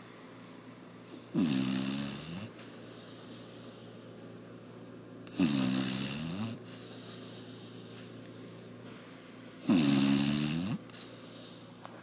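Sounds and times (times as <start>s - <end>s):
puppy snoring: 1.1s - 3.8s, 5.2s - 8.0s, 9.6s - 11.7s.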